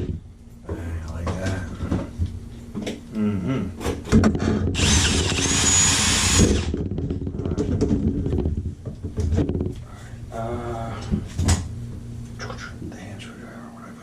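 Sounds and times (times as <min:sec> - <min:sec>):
power drill running in bursts: 0:04.8 - 0:06.7.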